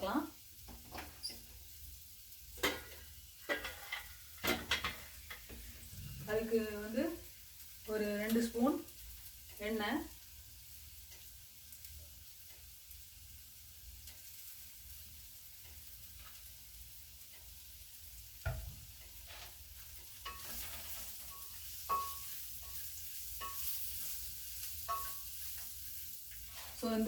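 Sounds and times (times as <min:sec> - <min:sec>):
food sizzling in hot oil: 0:00.0 - 0:27.0
spoon clanking against pan: 0:02.6 - 0:05.4, 0:20.1 - 0:25.8
metal spoon stirring: 0:19.2 - 0:27.0.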